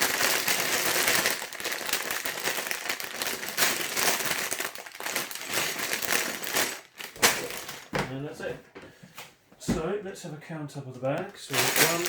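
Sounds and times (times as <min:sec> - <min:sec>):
plastic bags crinkling: 0:00.0 - 0:08.0, 0:11.1 - 0:12.0.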